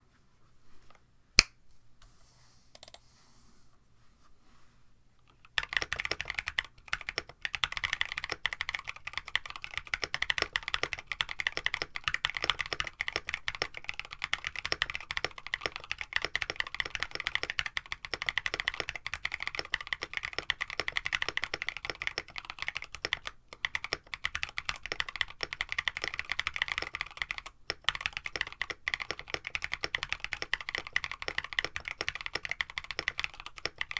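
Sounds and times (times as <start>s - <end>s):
finger snap: 1.4s - 1.6s
fast mechanical keyboard typing: 5.5s - 33.9s.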